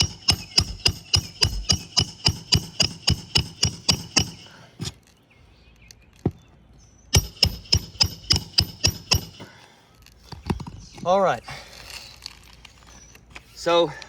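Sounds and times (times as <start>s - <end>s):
hammer blows on metal: 0.0s - 4.5s, 7.1s - 9.5s.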